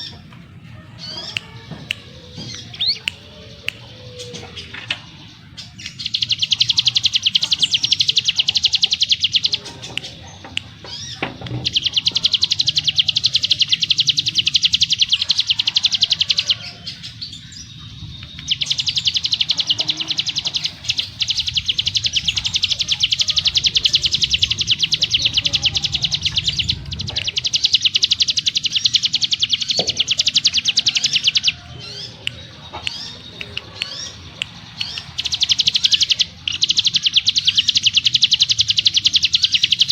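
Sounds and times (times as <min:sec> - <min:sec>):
bird singing fast trills: 0:00.0 - 0:00.3, 0:01.0 - 0:39.9.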